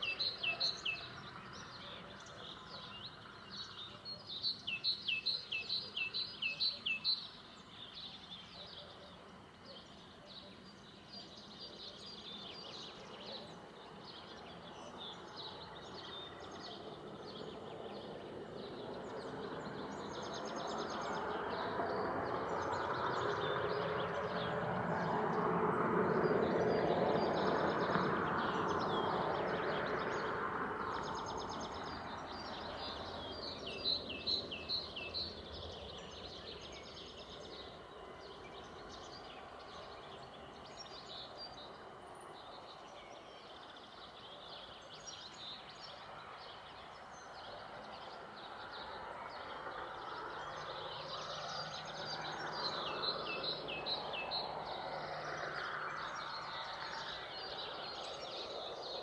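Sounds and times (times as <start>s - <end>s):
distant vehicle passing: 14.9s - 42.8s, 46.6s - 59.0s.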